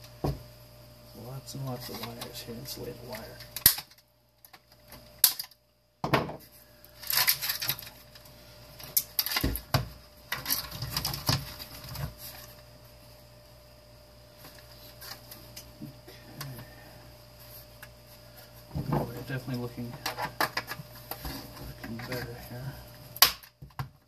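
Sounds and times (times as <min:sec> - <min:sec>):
metal and plastic parts clattering: 0:07.0 - 0:08.0, 0:08.9 - 0:09.7, 0:10.3 - 0:12.1.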